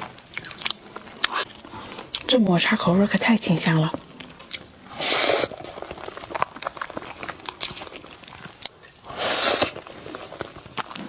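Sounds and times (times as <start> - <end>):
soft chewing: 0.0 - 2.3, 5.5 - 11.0.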